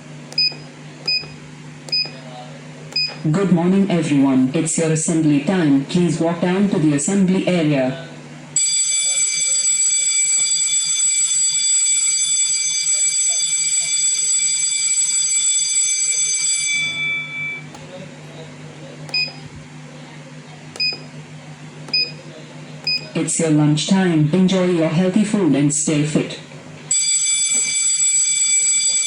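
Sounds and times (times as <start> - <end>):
short electronic beeps: 0.4 - 2.2, 3.0 - 3.2, 19.1 - 19.4, 20.8 - 21.1, 21.9 - 22.2, 22.9 - 23.1
shrill electric bell ringing: 10.6 - 17.7, 26.9 - 29.0.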